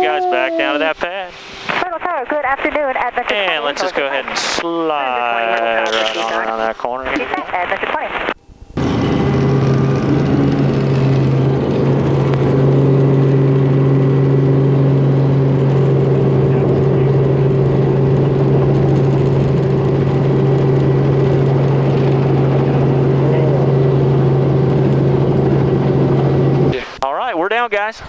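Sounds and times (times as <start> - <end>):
higher tone: 0.0 - 1.1, 8.8 - 26.8
helicopter engine and rotor: 8.8 - 26.8.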